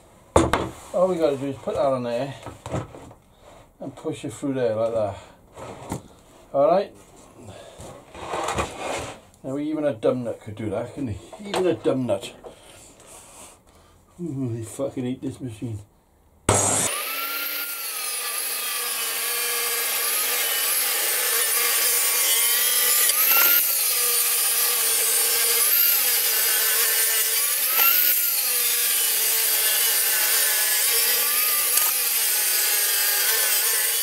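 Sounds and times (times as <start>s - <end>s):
table saw ripping wood: 16.5s - 34.0s.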